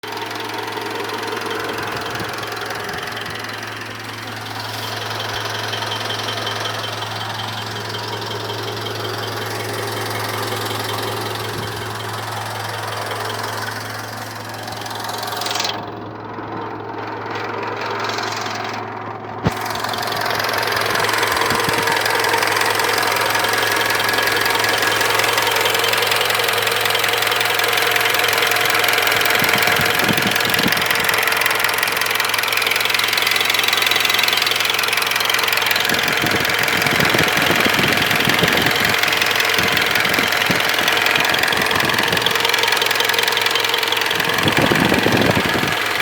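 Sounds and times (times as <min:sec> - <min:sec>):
diesel engine running: 0:00.0 - 0:46.0
metallic engine knock: 0:00.0 - 0:46.0.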